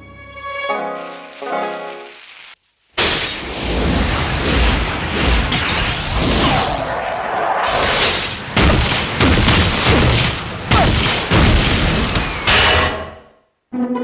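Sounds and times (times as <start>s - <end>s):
cartoon booms and crashes: 3.0s - 13.1s.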